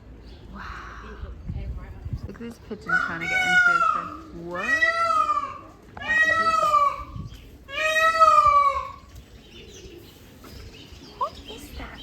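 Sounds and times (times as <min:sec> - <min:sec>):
peacock calling: 0:02.8 - 0:11.6.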